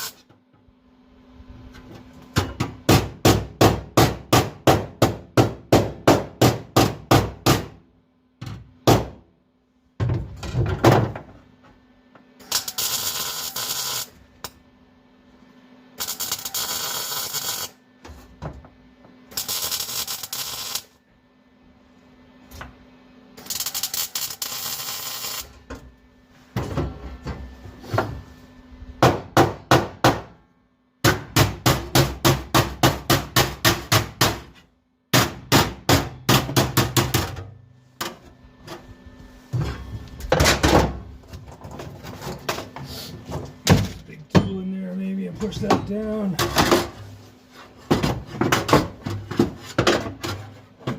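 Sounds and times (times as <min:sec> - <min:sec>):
crackling welding bursts: 0:00.0 - 0:00.2, 0:12.4 - 0:14.2, 0:16.0 - 0:17.8, 0:19.3 - 0:21.0, 0:23.4 - 0:25.6
hammer striking sheet steel: 0:31.0 - 0:37.4.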